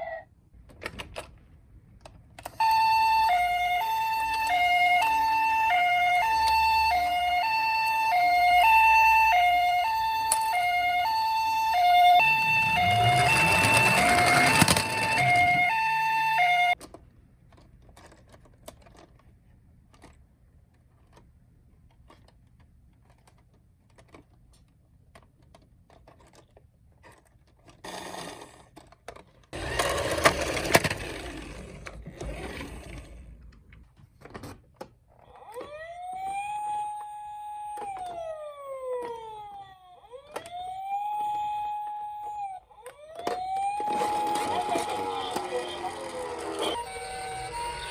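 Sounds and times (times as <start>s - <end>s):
toy car wheels rolling: 2.4s - 16.9s, 25.4s - 33.5s, 36.6s - 47.9s
toy two-tone siren: 2.5s - 16.8s, 35.2s - 47.9s.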